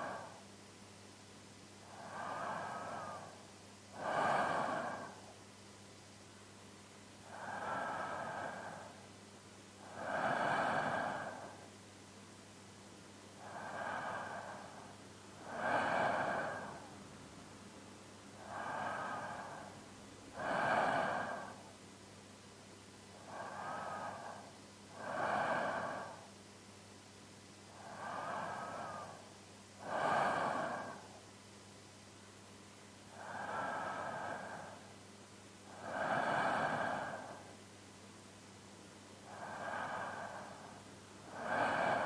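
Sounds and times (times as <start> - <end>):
man breathing in sleep: 0.0 - 0.4, 1.8 - 5.4, 7.2 - 9.1, 9.8 - 11.7, 13.4 - 17.1, 18.4 - 21.8, 23.1 - 26.4, 27.7 - 31.3, 33.1 - 35.0, 35.6 - 37.6, 39.2 - 42.0.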